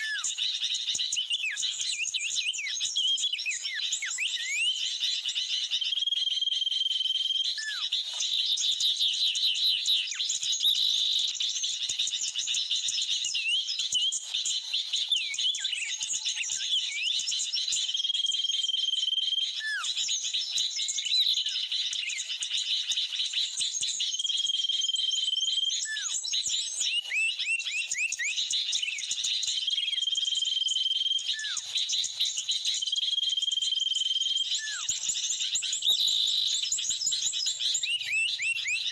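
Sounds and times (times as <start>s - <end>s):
chatter of small birds: 0.0s - 38.9s
high bird whistle: 1.4s - 4.8s, 29.7s - 31.7s, 32.8s - 35.0s.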